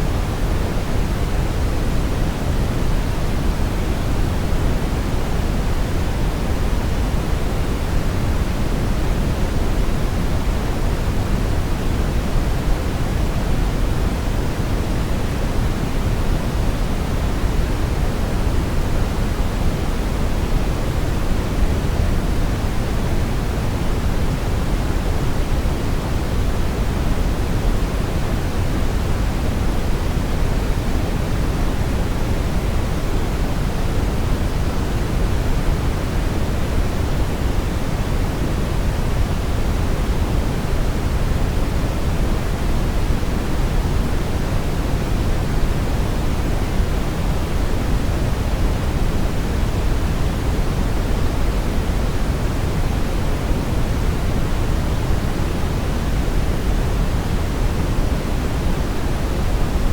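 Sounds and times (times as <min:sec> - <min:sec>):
brown noise hiss: 0:00.0 - 0:59.9.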